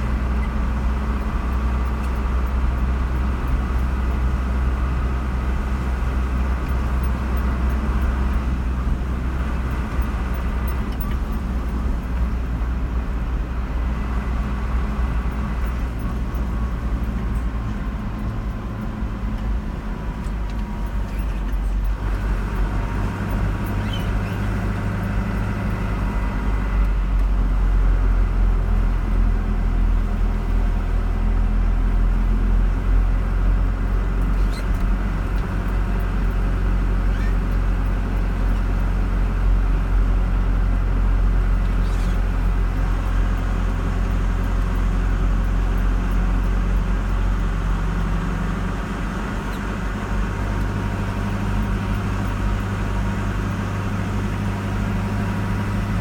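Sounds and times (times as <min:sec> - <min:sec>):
car engine and tyre rumble: 0:00.0 - 0:56.0.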